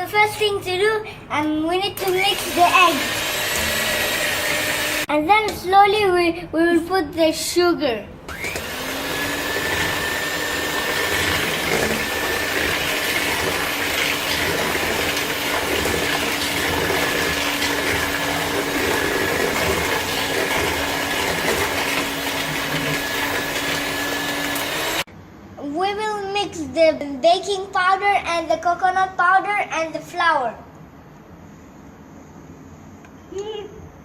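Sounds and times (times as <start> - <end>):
electric mixer whining: 2.1 - 5.1, 8.3 - 25.1.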